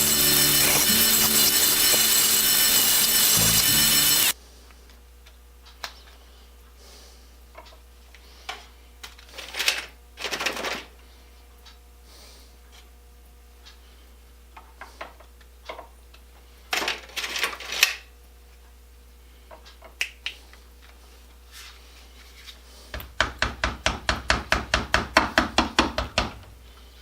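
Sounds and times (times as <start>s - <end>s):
metal pieces clinking: 0.0s - 4.4s
wire brush scrubbing metal: 0.0s - 4.4s.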